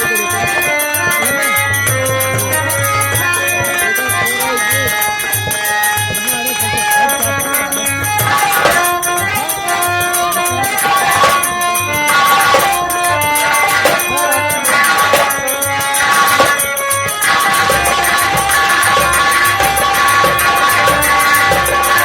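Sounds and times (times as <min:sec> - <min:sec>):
melody of held notes: 0:00.0 - 0:22.0
steady drum beat: 0:00.0 - 0:22.0.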